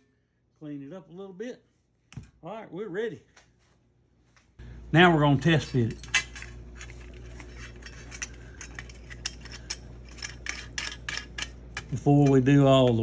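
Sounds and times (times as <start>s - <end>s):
steady low hum: 3.2s - 13.0s.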